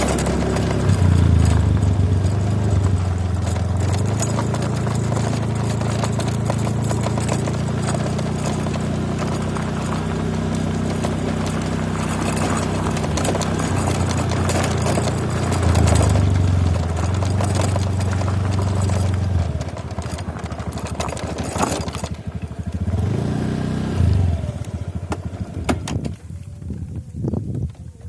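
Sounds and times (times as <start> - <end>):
motorcycle engine running: 0.0 - 28.0.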